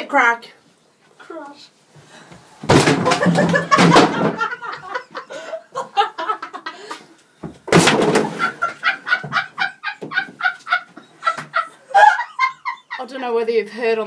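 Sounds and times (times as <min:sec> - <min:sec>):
wardrobe crashing: 0:02.6 - 0:04.7, 0:07.5 - 0:09.4.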